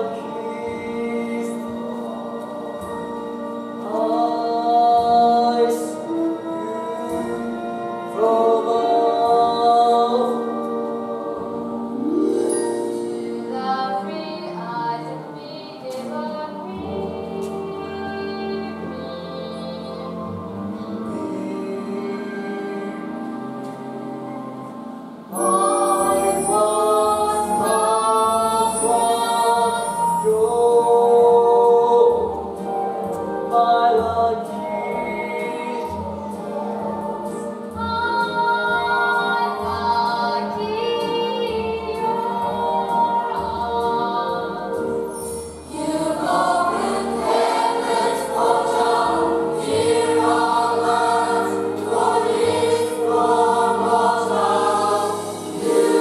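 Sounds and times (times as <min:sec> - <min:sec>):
chorus singing: 0:00.0 - 0:56.0
musical accompaniment with bass: 0:00.0 - 0:56.0.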